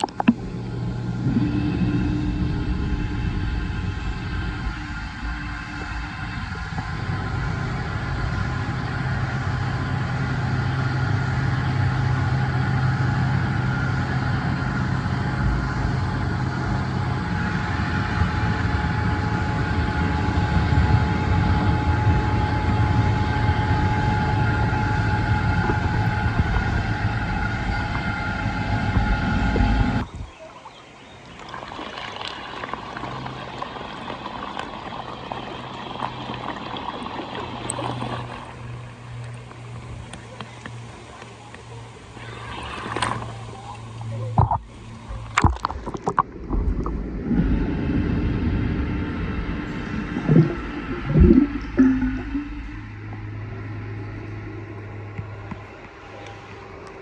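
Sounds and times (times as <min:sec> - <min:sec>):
pool cleaner motor hum and whine: 0:00.0 - 0:45.7, 0:46.4 - 0:57.0
water trickling and splashing: 0:30.0 - 0:47.3, 0:49.7 - 0:53.6.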